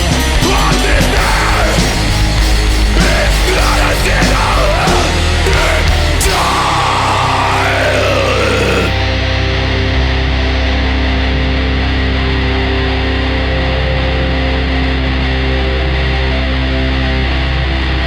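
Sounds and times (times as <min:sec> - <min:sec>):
punk band playing: 0:00.0 - 0:09.8
distorted guitar chord ringing: 0:00.0 - 0:18.0
harsh shouted vocals: 0:00.3 - 0:09.2.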